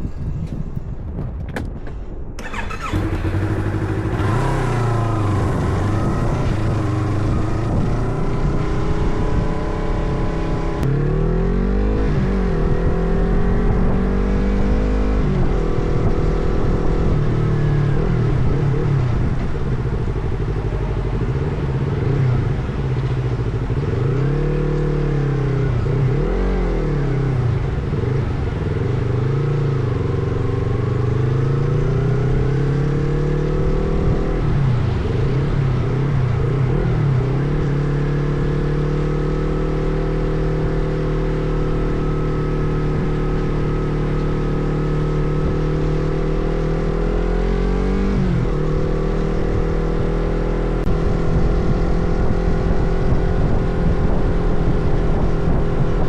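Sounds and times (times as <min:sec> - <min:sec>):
motorcycle engine revving: 0:02.4 - 0:56.0.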